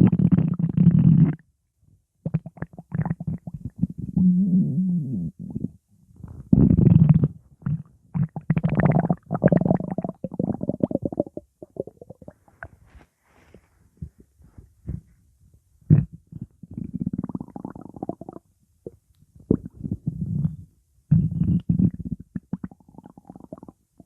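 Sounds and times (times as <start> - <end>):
stomach growling: 2.3 - 12.8, 15.9 - 23.8.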